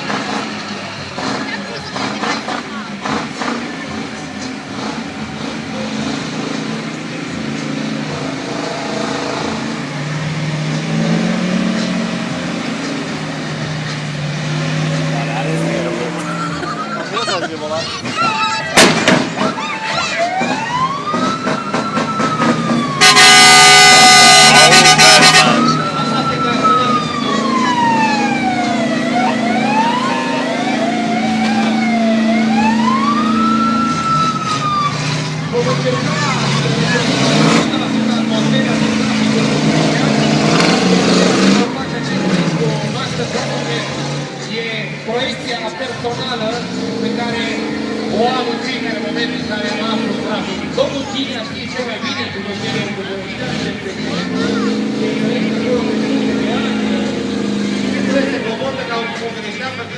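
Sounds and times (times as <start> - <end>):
vehicle engine running: 0.0 - 59.9
wailing siren: 18.2 - 41.0.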